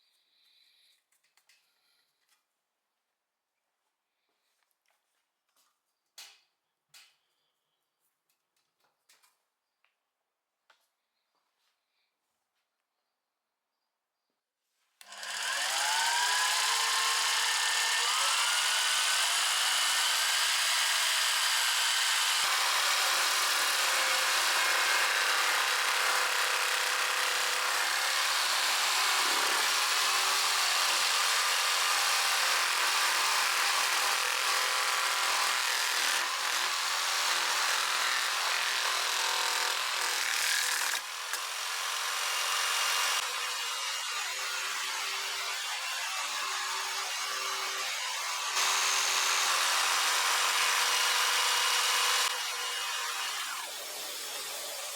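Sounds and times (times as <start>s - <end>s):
jigsaw sawing through wood: 15.0s - 54.9s.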